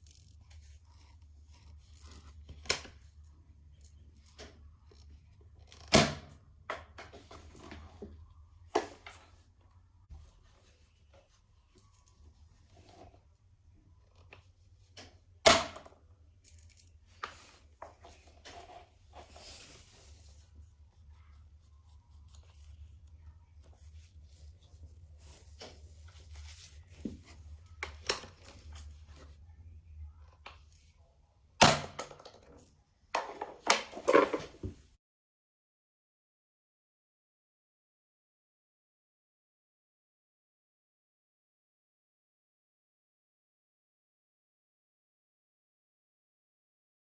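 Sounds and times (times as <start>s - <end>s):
rustling and scraping: 7.1s - 8.2s, 16.5s - 29.4s, 32.5s - 34.9s.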